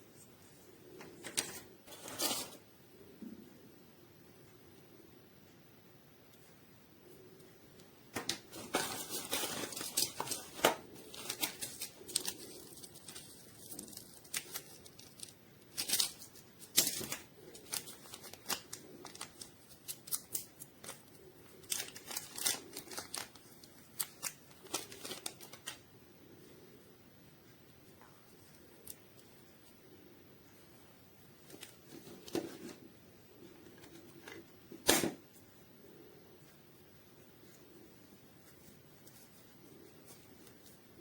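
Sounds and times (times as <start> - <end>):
rustling and tearing: 8.2 - 25.8.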